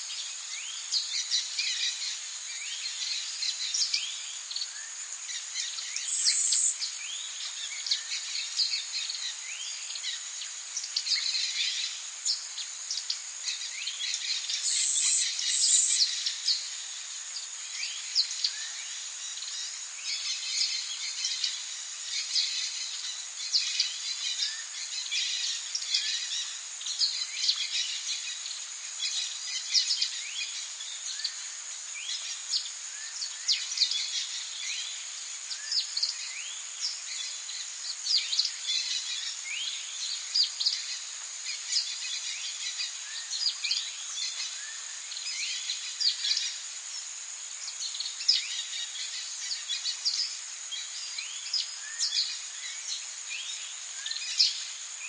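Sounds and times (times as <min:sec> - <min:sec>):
high buzzing insect calls: 0:00.0 - 0:55.0
birds chirping and calling: 0:06.0 - 0:06.8, 0:14.6 - 0:16.1
high-pitched insect drone: 0:06.0 - 0:06.9, 0:14.5 - 0:16.3.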